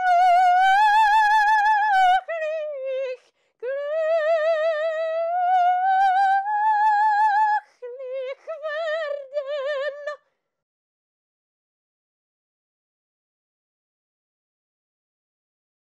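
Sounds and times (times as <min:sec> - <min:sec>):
woman singing opera: 0:00.0 - 0:10.2.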